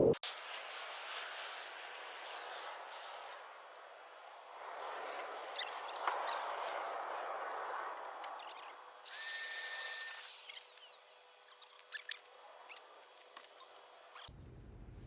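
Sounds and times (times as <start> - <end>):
small electric motor whirring: 8.0 - 14.3.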